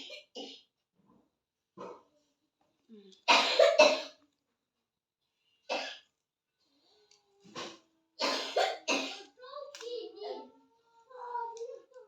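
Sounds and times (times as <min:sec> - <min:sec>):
person coughing: 0:03.3 - 0:04.2, 0:07.6 - 0:09.3.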